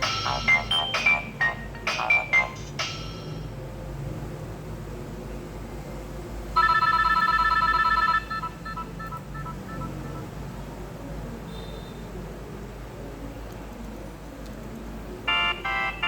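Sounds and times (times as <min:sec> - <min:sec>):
electronic ringtone beeps: 0:00.0 - 0:03.4, 0:06.6 - 0:10.3, 0:15.3 - 0:16.0.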